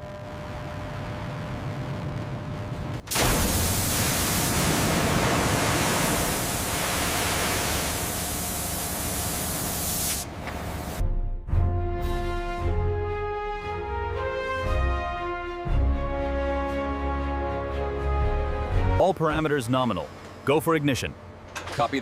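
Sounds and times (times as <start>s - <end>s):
loud steady hiss: 3.1s - 11.0s.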